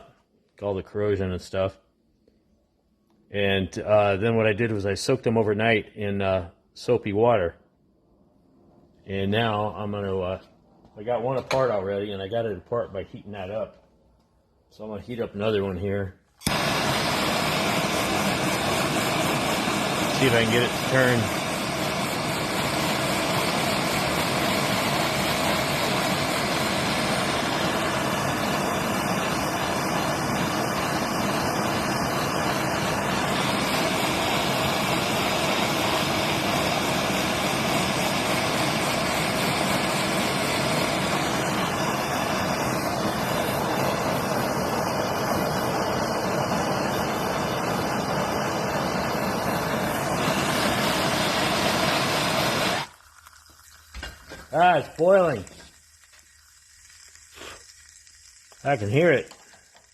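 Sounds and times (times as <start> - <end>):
gas torch flame rushing: 14.5 - 59.9
faint high crackle: 16.4 - 59.9.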